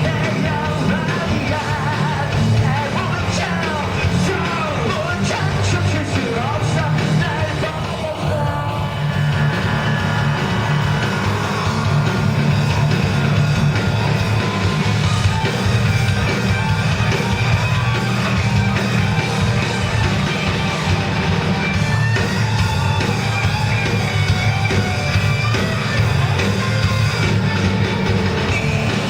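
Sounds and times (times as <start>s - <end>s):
sung and shouted vocals: 0.0s - 11.9s
loud rock band playing: 0.0s - 29.0s.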